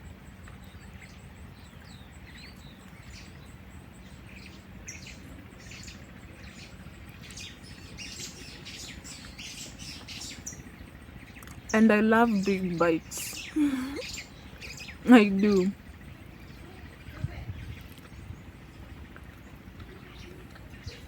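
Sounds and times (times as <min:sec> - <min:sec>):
birds chirping: 0:00.6 - 0:21.0.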